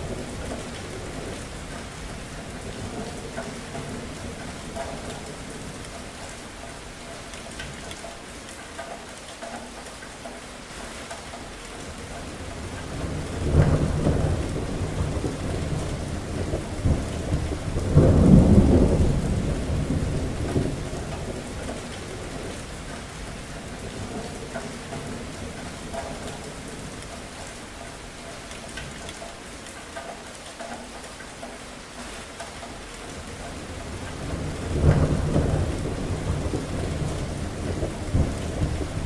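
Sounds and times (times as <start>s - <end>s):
steady rain falling: 0.0s - 39.0s
thunder rolling: 12.8s - 22.5s, 33.9s - 39.0s
sharp thunder crack: 13.4s - 20.8s.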